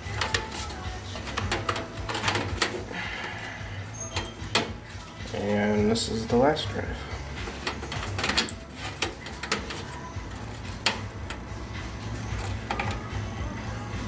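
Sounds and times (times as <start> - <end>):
plastic cable clicks and rattles: 0.1 - 3.0, 7.4 - 11.4.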